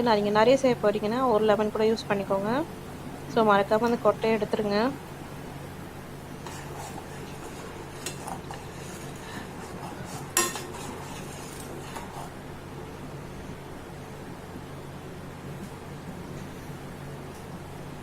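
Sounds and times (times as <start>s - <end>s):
metal spoon clinking on pan: 10.4s - 10.8s.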